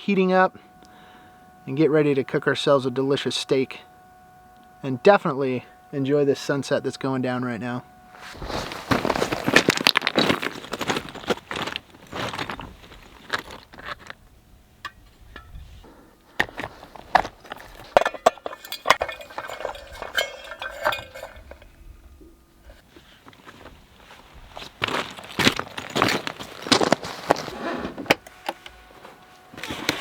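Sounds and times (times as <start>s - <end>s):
cooking gear clinking and knocking: 16.4s - 22.7s.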